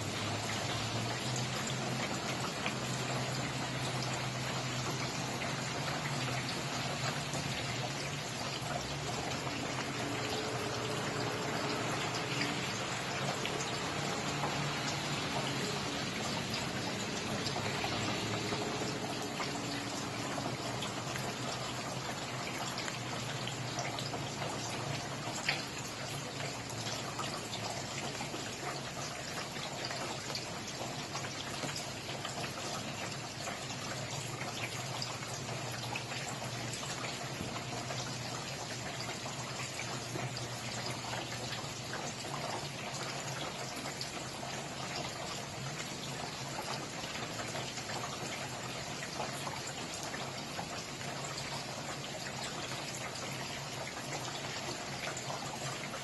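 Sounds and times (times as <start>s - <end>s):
steady rain falling: 0.0s - 56.0s
water drips ticking: 0.0s - 56.0s.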